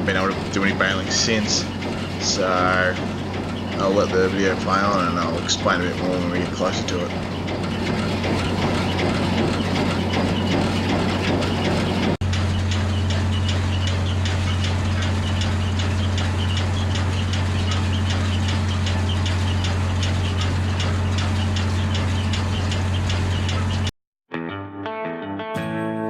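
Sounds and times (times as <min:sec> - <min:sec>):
tractor engine running: 0:00.0 - 0:23.9
guitar music: 0:24.3 - 0:26.0.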